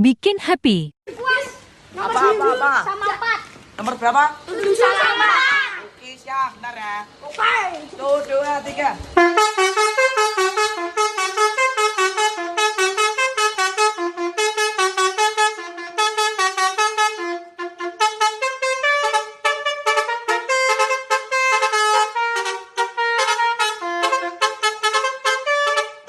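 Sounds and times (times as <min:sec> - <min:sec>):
multi-tone musical horn melody: 0:09.2 - 0:26.0.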